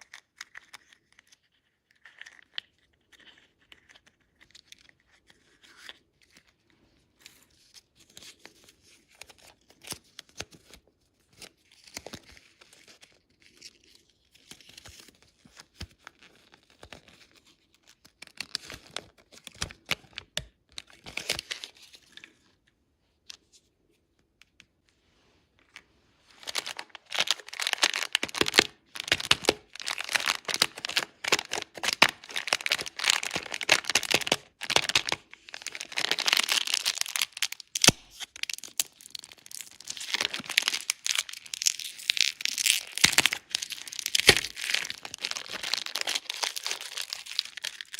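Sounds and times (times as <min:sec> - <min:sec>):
candy wrappers crinkling and tearing: 0:00.0 - 0:06.5, 0:25.7 - 0:47.9.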